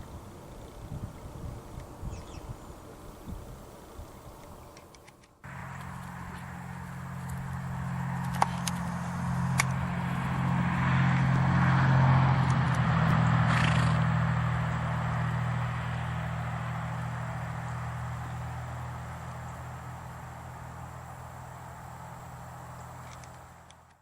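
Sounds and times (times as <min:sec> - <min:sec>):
vehicle engine humming: 0:00.0 - 0:24.0
sharp clicks: 0:23.0 - 0:24.0.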